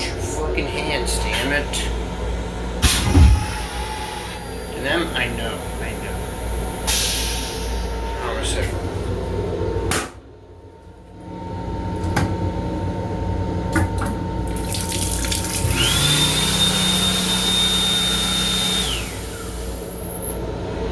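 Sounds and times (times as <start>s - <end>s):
sink water running: 14.4s - 17.5s
small motor whining: 15.6s - 20.2s.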